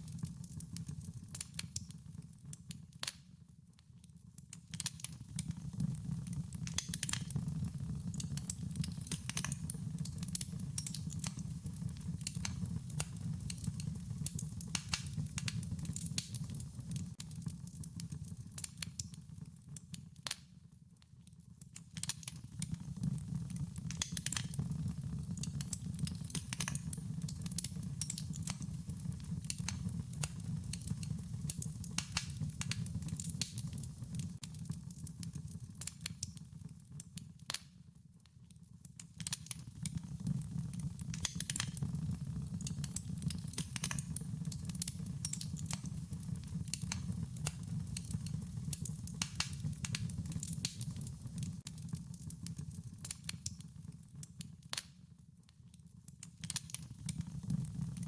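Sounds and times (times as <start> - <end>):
wood fire crackling and popping: 0.0 - 58.0
low rumble of burning: 4.8 - 19.9, 21.6 - 36.7, 39.2 - 53.6, 56.5 - 58.0.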